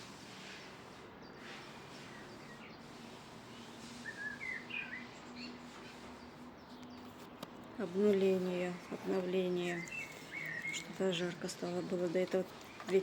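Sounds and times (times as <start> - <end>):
outdoor hiss: 0.0 - 6.7
bird chirping: 1.2 - 7.2, 8.5 - 13.0.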